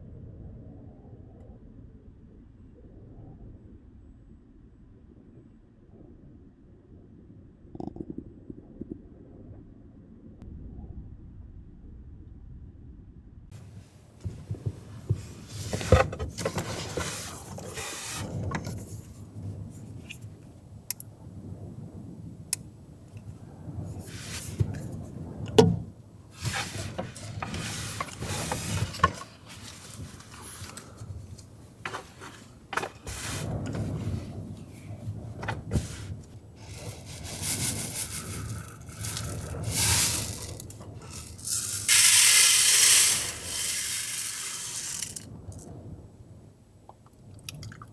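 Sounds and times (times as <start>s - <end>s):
hissing rush: 13.6s - 20.5s, 23.1s - 45.3s
rubbing and rustling: 13.6s - 21.0s, 22.6s - 45.6s.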